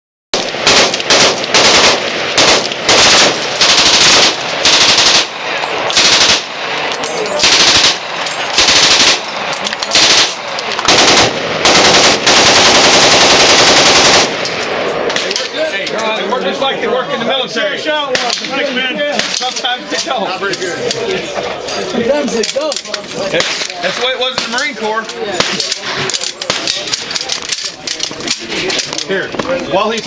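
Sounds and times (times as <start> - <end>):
machine gun firing bursts: 0.4 - 6.7, 7.4 - 14.4.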